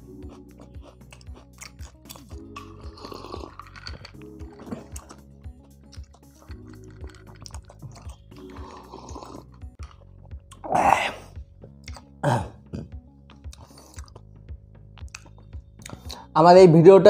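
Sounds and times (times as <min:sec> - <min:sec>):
background music with steady beat: 0:00.0 - 0:17.0
person clearing throat: 0:10.6 - 0:11.4, 0:12.2 - 0:12.9.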